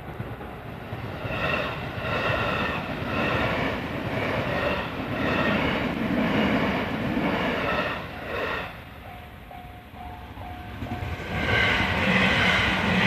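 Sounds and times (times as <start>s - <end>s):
train rumble: 0.0s - 13.0s
level-crossing warning bell: 8.7s - 12.9s.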